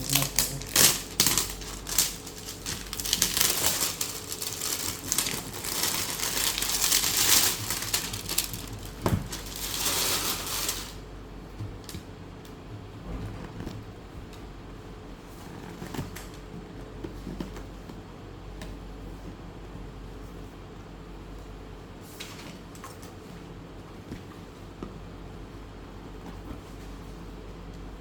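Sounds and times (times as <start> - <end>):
packaging crinkling and rustling: 0.0 - 12.1.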